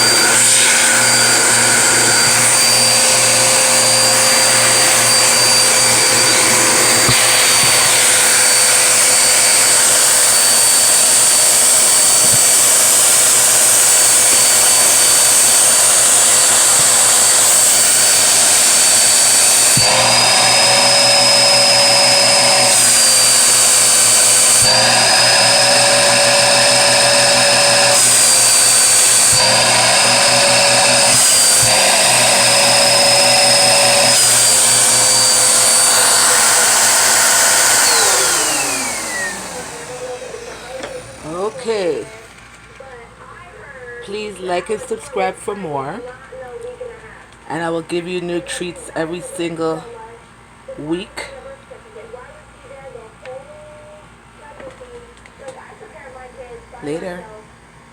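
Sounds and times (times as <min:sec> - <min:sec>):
vacuum cleaner running: 0:00.0 - 0:43.4, 0:55.4 - 0:57.5.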